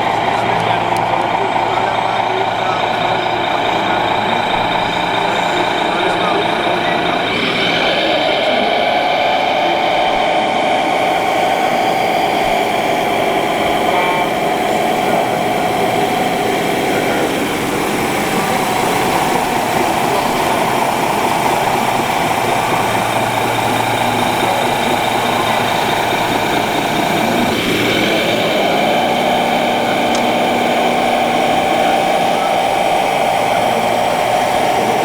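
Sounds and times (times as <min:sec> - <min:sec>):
model motor whine: 0:00.0 - 0:35.0.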